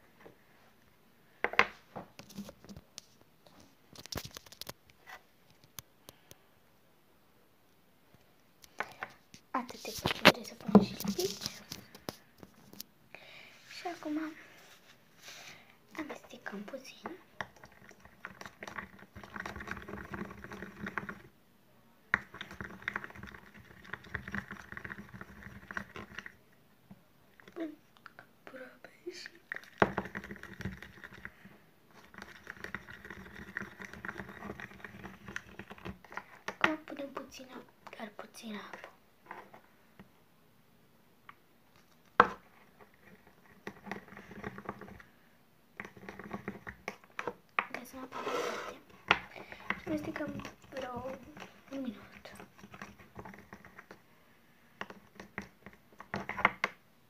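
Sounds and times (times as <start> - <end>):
sticky glue being stirred: 8.7 - 12.8, 15.9 - 21.3, 22.1 - 26.4, 29.1 - 39.5, 41.7 - 45.1, 45.7 - 54.1, 54.7 - 56.8.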